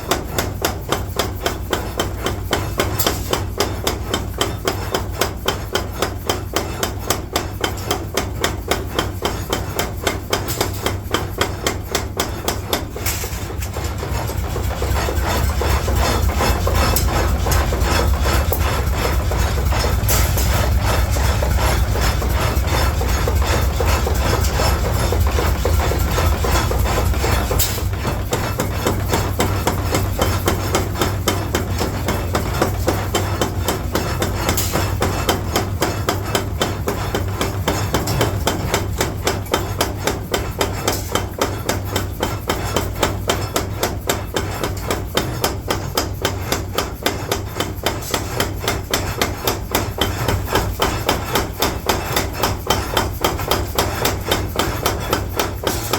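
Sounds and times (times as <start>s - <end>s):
low machine rumble: 12.3s - 41.4s.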